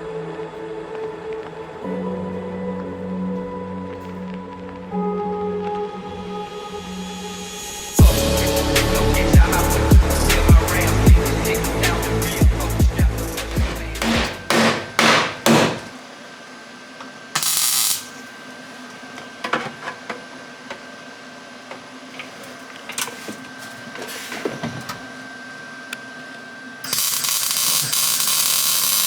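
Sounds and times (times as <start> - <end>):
welder crackling buzz: 8.1 - 16.1, 17.3 - 18.9, 26.8 - 29.0
tool clicks and knocks: 13.5 - 15.9.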